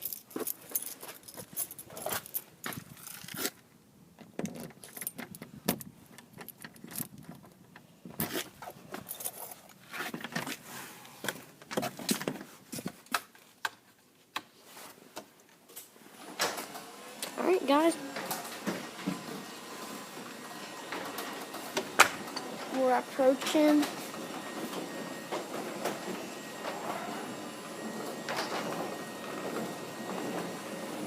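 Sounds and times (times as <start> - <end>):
keys jangling: 0.0 - 3.4, 9.0 - 9.7.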